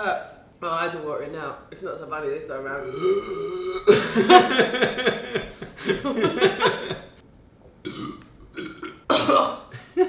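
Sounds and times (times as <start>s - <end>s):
person laughing: 3.9s - 7.2s.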